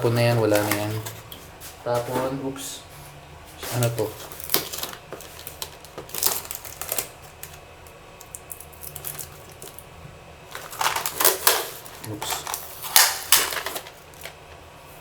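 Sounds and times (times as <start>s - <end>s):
packaging rustling: 0.0s - 1.2s, 3.6s - 9.9s, 10.5s - 14.5s
plastic parts clicking and clattering: 10.5s - 14.4s.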